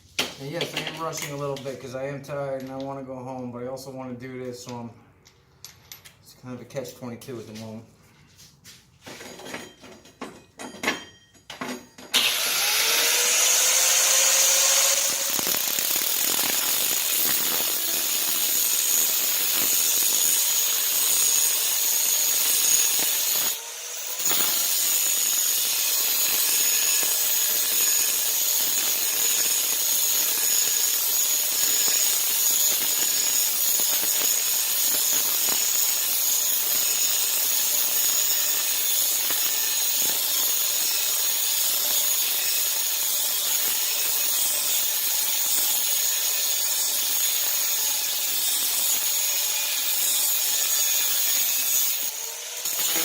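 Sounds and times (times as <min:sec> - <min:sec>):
cut-off wheel grinding steel: 0:12.2 - 0:53.0.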